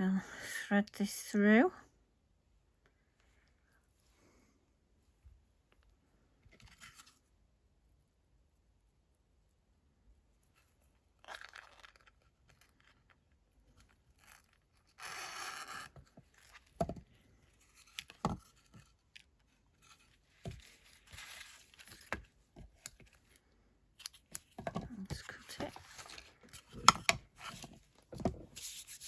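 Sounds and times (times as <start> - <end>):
ribbon rustling and scraping: 10.5 - 23.4, 24.2 - 29.0.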